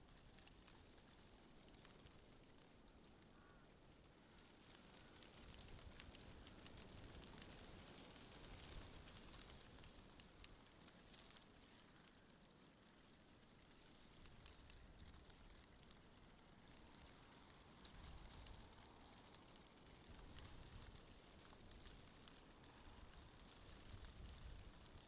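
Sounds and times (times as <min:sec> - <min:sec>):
soft ticks and crackles: 0:00.0 - 0:25.0.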